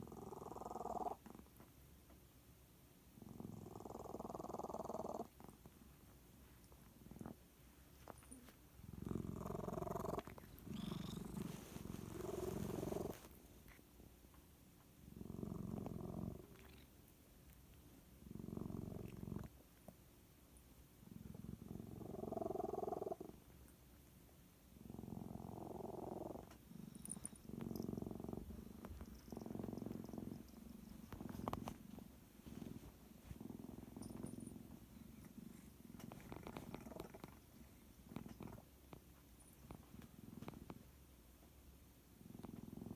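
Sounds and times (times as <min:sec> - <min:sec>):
cat purring snore: 0:00.0 - 0:01.6, 0:03.1 - 0:05.8, 0:07.0 - 0:07.4, 0:08.3 - 0:13.8, 0:15.0 - 0:16.9, 0:18.2 - 0:19.6, 0:21.0 - 0:23.5, 0:24.7 - 0:40.9, 0:42.1 - 0:42.9.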